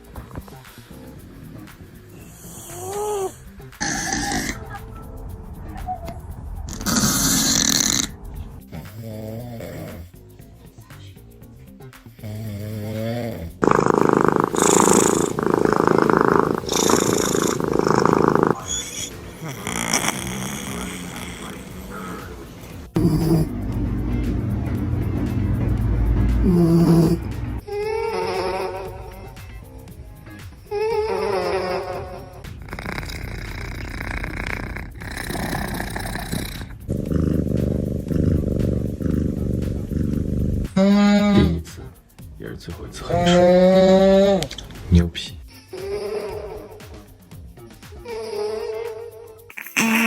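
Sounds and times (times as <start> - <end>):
cat snoring loudly: 0.0 - 4.7, 6.7 - 10.1, 12.2 - 23.7, 26.2 - 27.6, 30.7 - 41.7, 49.5 - 50.0
deep buzzing drone: 1.0 - 10.2, 21.8 - 27.7, 32.4 - 41.7
quiet wavering pitched sound: 4.5 - 8.7.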